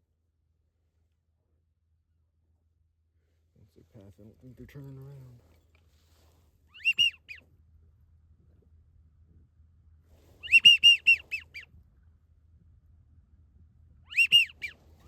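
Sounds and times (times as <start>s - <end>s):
seagulls calling: 6.8s - 7.4s, 10.4s - 11.6s, 14.1s - 14.8s.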